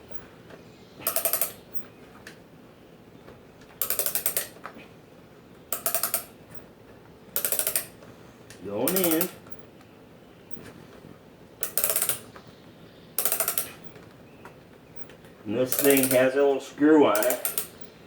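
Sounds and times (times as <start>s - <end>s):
brace ratchet clicking: 1.0s - 2.4s, 3.8s - 4.7s, 5.7s - 6.7s, 7.3s - 9.7s, 11.6s - 12.4s, 13.2s - 14.1s, 14.9s - 18.0s.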